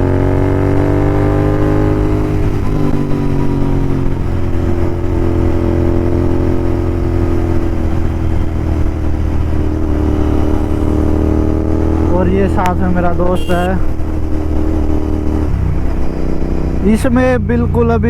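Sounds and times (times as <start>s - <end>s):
loud motorcycle engine: 0.0s - 18.0s.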